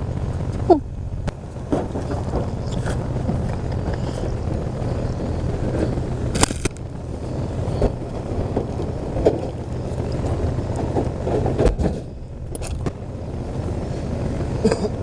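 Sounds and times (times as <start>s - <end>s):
vehicle engine idling: 0.0s - 15.0s
sharp knocks and clatters: 1.3s - 4.0s.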